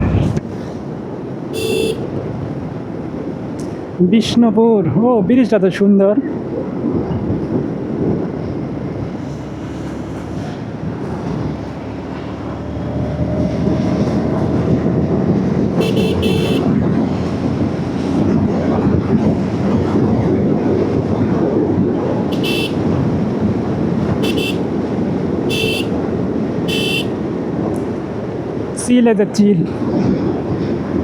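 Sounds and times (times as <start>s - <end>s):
wind noise: 0.0s - 31.0s
horn beeping: 1.5s - 2.2s, 15.8s - 16.8s, 22.2s - 23.2s, 24.2s - 27.2s
motorcycle engine: 1.5s - 2.4s, 9.2s - 18.2s, 21.9s - 28.1s.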